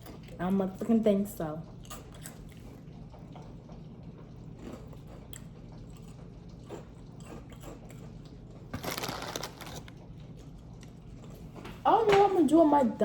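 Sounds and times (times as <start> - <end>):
low background hum: 0.0 - 13.0
person chewing food: 1.8 - 11.6.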